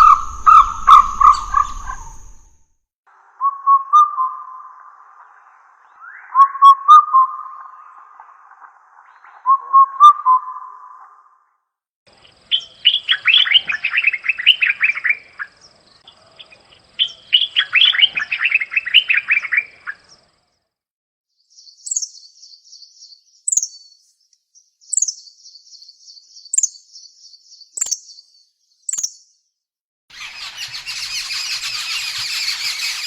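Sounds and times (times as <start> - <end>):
birds singing: 0.0 - 2.6, 12.1 - 20.3, 21.4 - 29.4, 30.1 - 33.0
very high bird chirps: 0.0 - 2.6, 12.3 - 16.2, 21.4 - 24.0, 24.8 - 29.4, 30.1 - 33.0.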